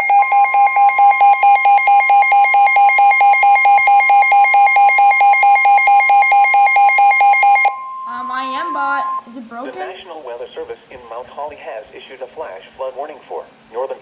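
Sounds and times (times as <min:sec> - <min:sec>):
shrill two-tone alert signal: 0:00.0 - 0:09.3.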